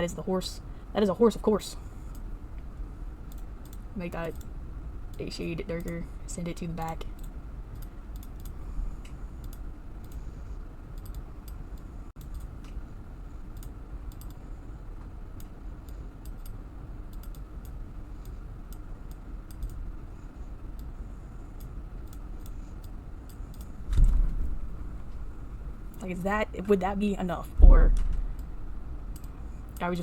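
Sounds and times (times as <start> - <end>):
steady low hum: 0.0 - 30.0
computer mouse and keyboard clicking: 6.6 - 10.2, 10.9 - 12.8, 13.5 - 14.4, 15.4 - 19.8, 21.6 - 23.7.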